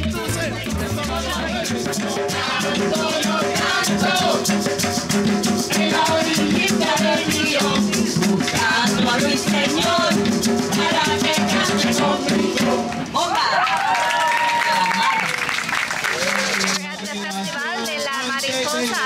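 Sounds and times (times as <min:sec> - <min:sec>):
fast shaker rhythm: 0:00.0 - 0:13.0, 0:14.7 - 0:19.0
latin music with singing: 0:00.0 - 0:13.6, 0:15.9 - 0:19.0.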